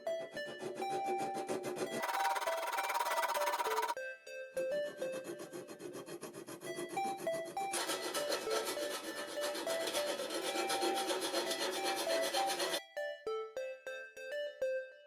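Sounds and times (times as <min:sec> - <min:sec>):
light melodic background music: 0:00.0 - 0:15.0
hand tool rasping cymbal edge: 0:00.7 - 0:04.0, 0:07.7 - 0:12.8.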